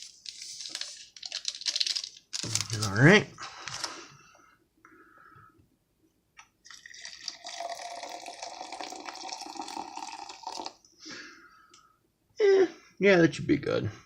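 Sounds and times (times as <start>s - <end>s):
water pouring into glass: 6.6s - 10.8s.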